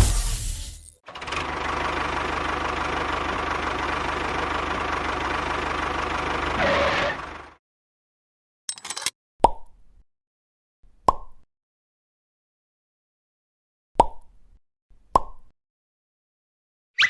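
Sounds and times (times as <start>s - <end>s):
engine idling: 1.1s - 7.6s.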